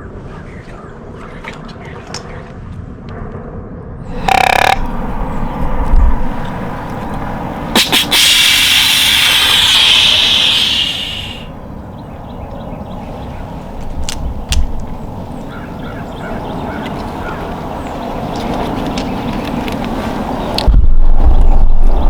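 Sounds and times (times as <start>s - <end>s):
sharp snaps: 7.7s - 11.5s
deer snort-wheeze: 7.8s - 11.5s.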